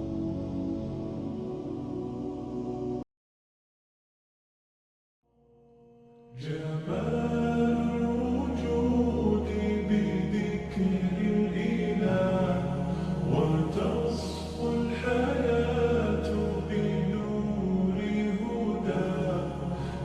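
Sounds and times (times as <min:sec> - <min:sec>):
chant-like singing voices: 0:06.3 - 0:20.0
steady bass: 0:06.4 - 0:20.0.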